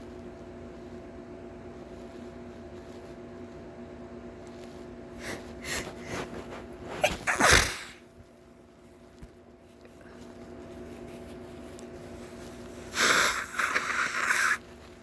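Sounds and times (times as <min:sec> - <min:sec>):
person sneezing loudly: 0:07.0 - 0:08.0.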